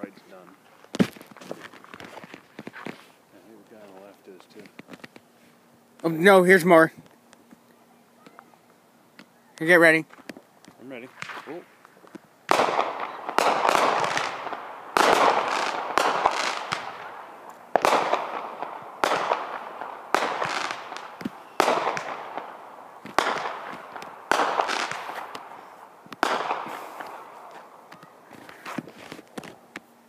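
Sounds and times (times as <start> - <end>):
fireworks bursting: 9.2 - 29.9.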